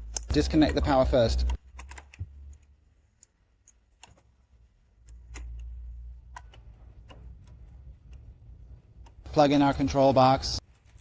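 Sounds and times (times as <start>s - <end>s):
clicks and taps of small parts: 0.0s - 4.2s.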